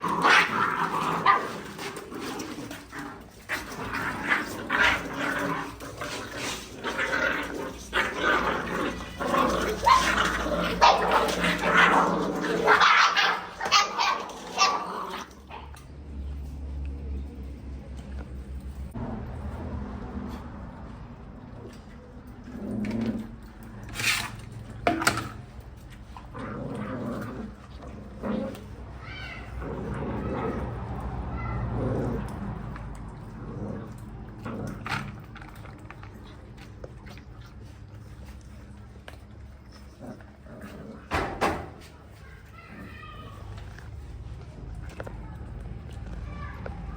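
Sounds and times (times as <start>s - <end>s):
puppies growling: 0.0s - 46.9s
puppies yipping and barking: 4.8s - 15.9s.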